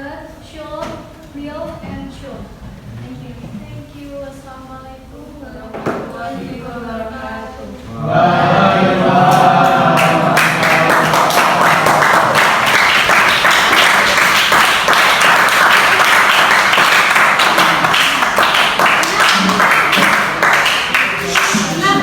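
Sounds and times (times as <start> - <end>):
students answering in unison: 6.2 - 12.6, 17.1 - 22.0
clapping: 9.2 - 22.0.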